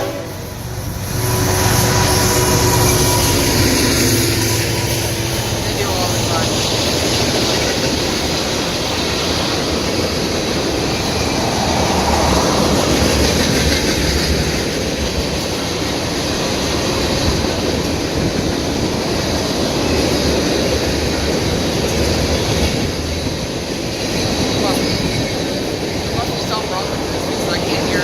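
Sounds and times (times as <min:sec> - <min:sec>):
steel wheels on rails: 0:00.0 - 0:28.0.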